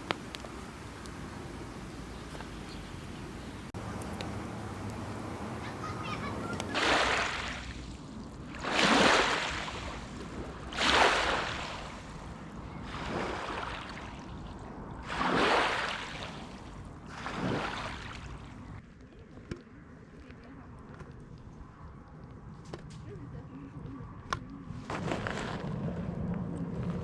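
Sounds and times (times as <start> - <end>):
low steady rumble: 0.0 - 6.7
small waves washing ashore: 0.0 - 18.8.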